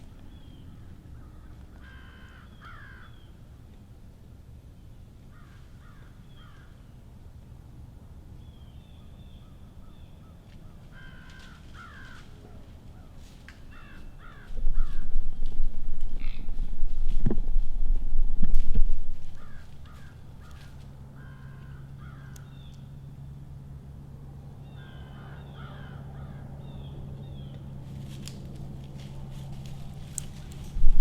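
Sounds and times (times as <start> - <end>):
crows cawing: 0.1 - 3.2, 5.3 - 6.8, 10.3 - 15.2, 16.1 - 16.6, 19.3 - 22.5, 24.7 - 26.6
loud low rumble: 14.4 - 20.4.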